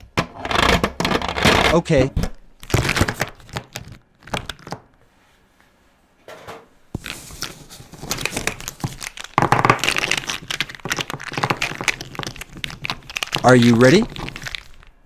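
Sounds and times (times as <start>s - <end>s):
paper rustling: 7.0s - 15.0s.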